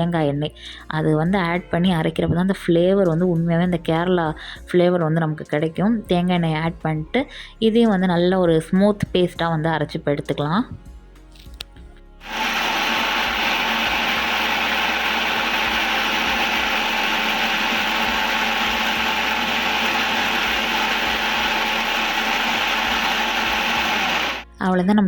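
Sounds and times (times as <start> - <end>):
electric mixer grinder running: 12.2 - 24.4.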